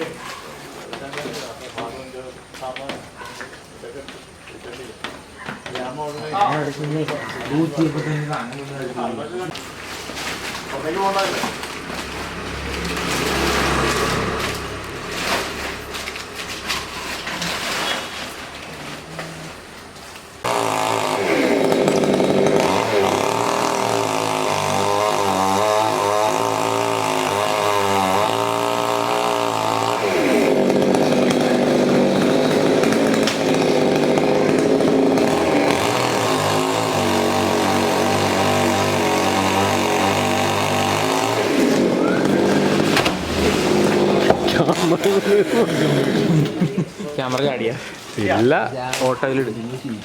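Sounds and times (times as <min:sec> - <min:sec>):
chainsaw revving and cutting: 0:09.5 - 0:18.0, 0:20.4 - 0:46.7.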